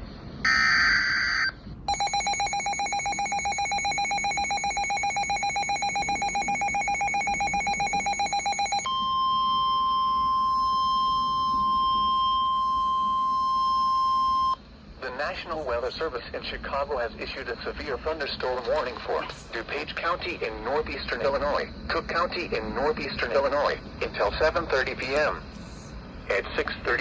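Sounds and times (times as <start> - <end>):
screeching data bursts: 0.5 - 8.9
harsh two-tone alert signal: 0.5 - 14.6
steady single-pitch alert tone: 0.5 - 14.6.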